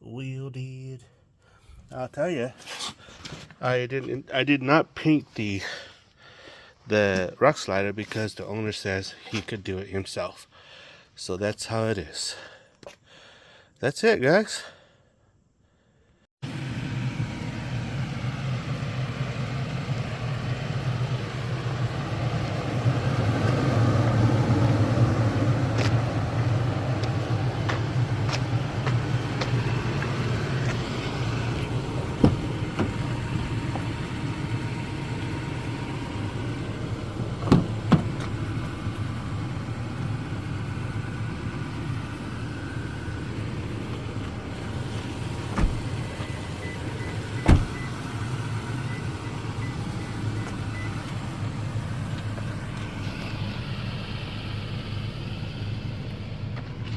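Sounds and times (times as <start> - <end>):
vehicle engine humming: 16.4 - 56.9.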